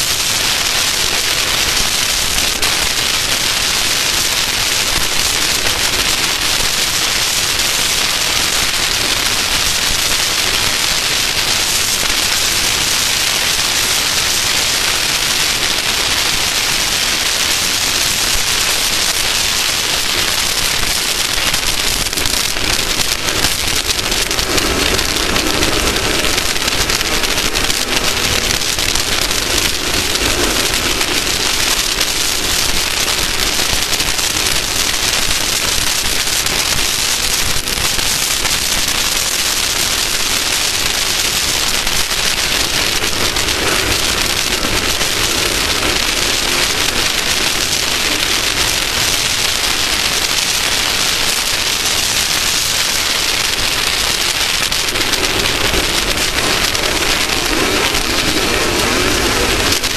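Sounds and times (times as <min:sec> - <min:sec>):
wind and spray over microphone: 0:14.0 - 0:34.0.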